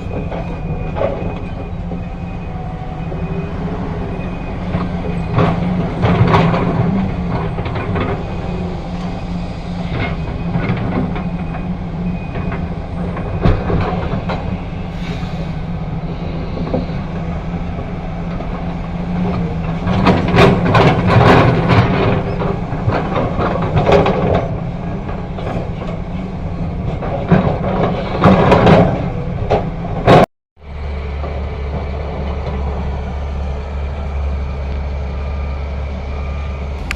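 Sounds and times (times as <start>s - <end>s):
diesel engine running: 0.0s - 36.9s
metal clanks and rattles: 4.7s - 8.3s, 18.3s - 30.3s.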